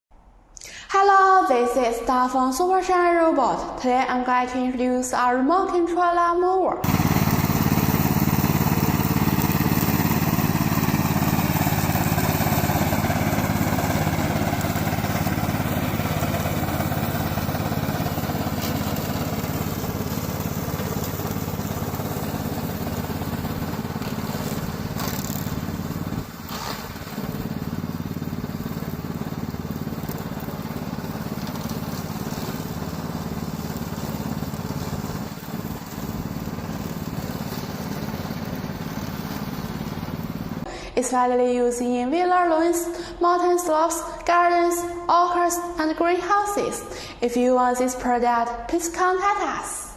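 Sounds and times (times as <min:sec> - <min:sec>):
lawn mower engine running: 0:06.8 - 0:40.7.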